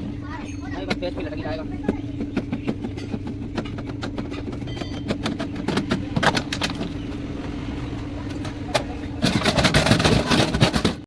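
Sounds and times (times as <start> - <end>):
steady engine hum: 0.0 - 11.0
knocks and clicks: 1.8 - 7.6.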